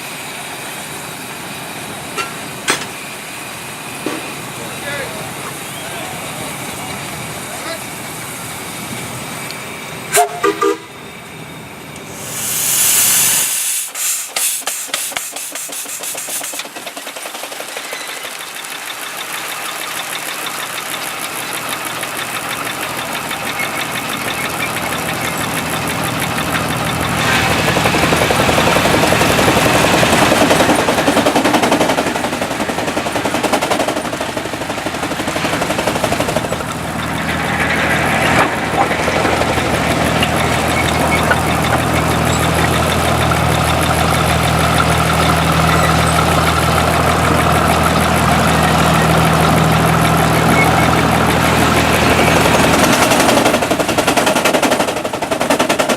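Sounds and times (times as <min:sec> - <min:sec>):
steam engine exhaust beats: 0:00.0 - 0:55.9
steam whistle toot: 0:10.1 - 0:11.1, 0:12.2 - 0:14.9
steam hiss: 0:12.0 - 0:18.2.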